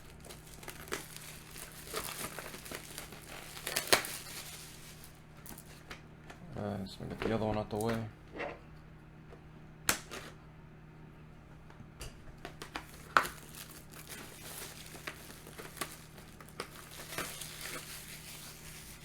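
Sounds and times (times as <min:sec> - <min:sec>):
plastic packaging crinkling: 0:00.0 - 0:05.9, 0:12.6 - 0:19.0.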